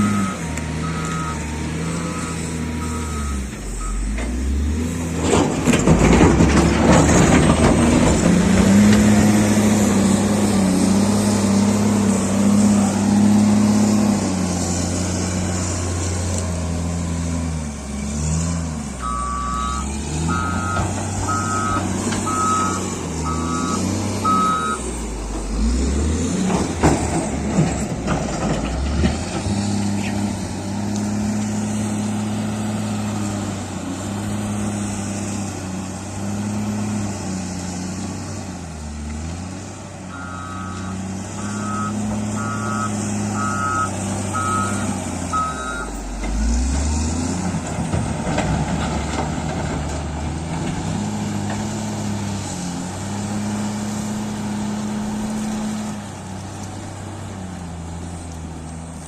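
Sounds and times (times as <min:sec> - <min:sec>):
reversing alarm beeping: 0:00.0 - 0:04.2, 0:19.0 - 0:24.9, 0:40.1 - 0:46.1
diesel engine of heavy machinery: 0:00.0 - 0:59.0.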